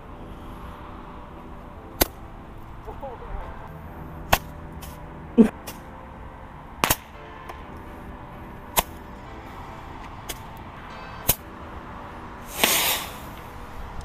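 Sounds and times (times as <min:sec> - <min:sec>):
fireworks popping: 0:12.5 - 0:13.3.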